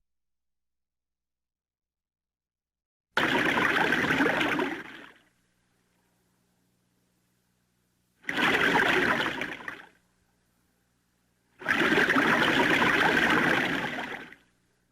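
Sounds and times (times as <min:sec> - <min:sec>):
diver exhaling bubbles underwater: 0:03.2 - 0:05.3, 0:08.2 - 0:10.0, 0:11.6 - 0:14.5.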